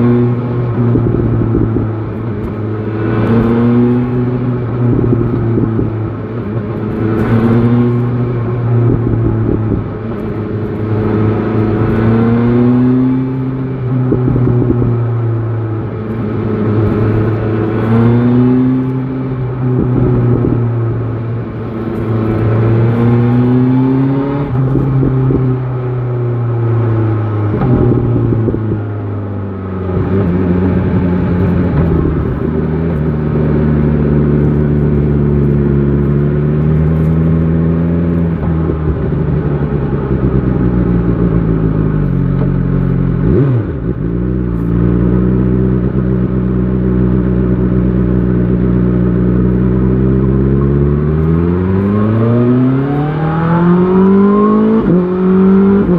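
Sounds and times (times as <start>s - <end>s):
motorcycle engine revving: 16.1s - 55.9s.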